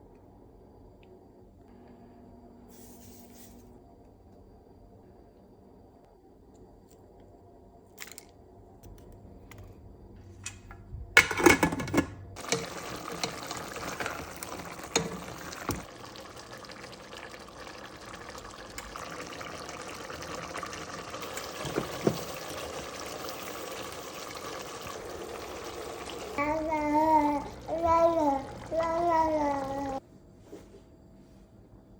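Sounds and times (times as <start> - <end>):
food cooking with watery hiss: 12.4 - 30.0.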